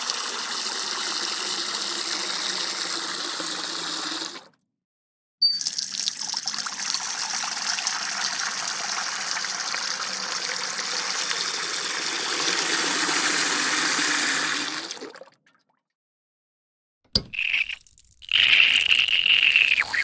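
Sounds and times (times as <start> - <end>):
water running from faucet: 0.0 - 4.5, 5.6 - 14.9, 17.2 - 20.0.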